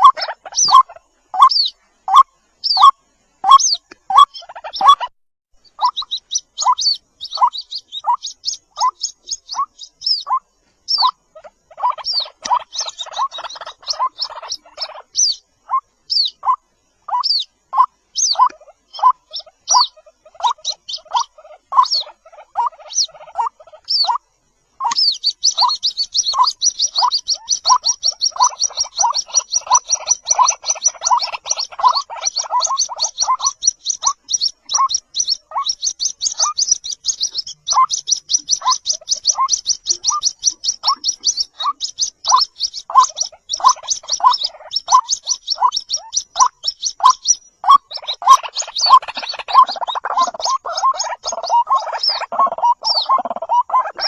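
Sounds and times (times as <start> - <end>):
chicks calling: 0.0 - 54.0
high-pitched cheeping chatter: 25.5 - 54.0.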